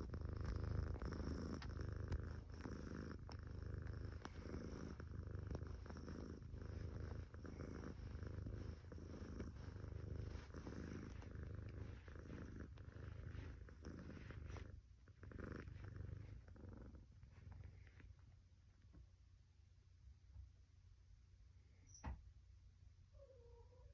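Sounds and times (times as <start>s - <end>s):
cat purring: 0.0s - 19.0s.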